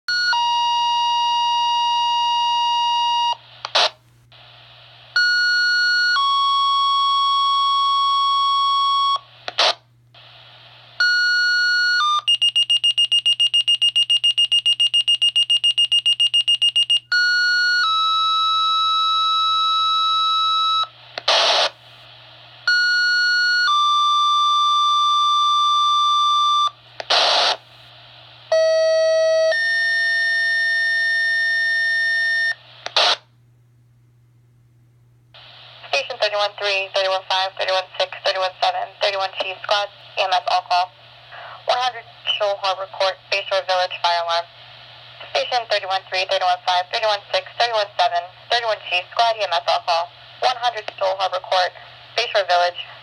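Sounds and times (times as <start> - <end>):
steady low hum: 0.9 - 12.2, 17.1 - 53.0
radio static burst: 21.2 - 22.0, 27.0 - 27.8, 45.2 - 53.0.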